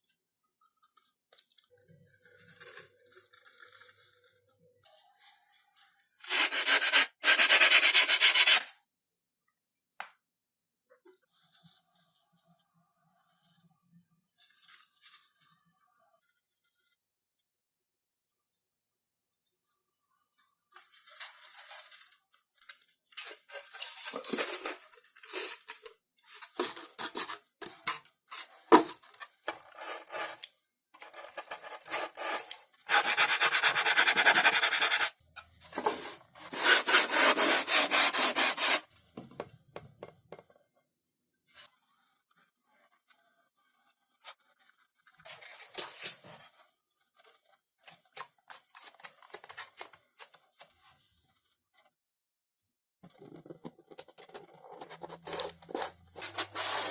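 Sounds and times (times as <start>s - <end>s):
scraping and rubbing foam: 6.3s - 8.7s, 31.0s - 39.0s, 54.6s - 56.9s.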